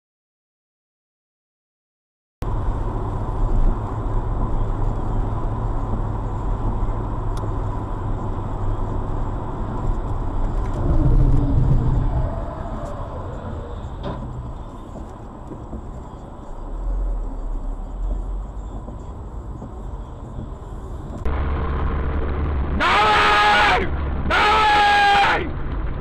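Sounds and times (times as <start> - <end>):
car road and engine noise: 2.4 - 26.0
loud sustained pitched tone: 21.3 - 25.3.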